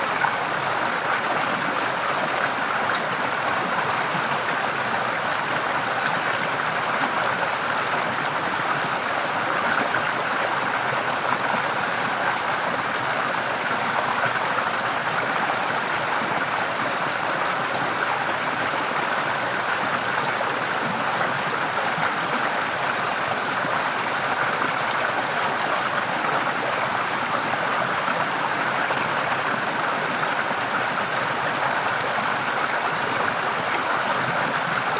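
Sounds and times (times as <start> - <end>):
stream water flowing: 0.0 - 34.9.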